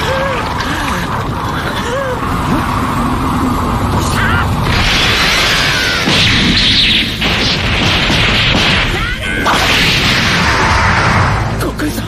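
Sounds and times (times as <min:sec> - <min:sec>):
loud rushing noise: 0:02.3 - 0:11.8
crashing hits and booms: 0:04.4 - 0:11.6.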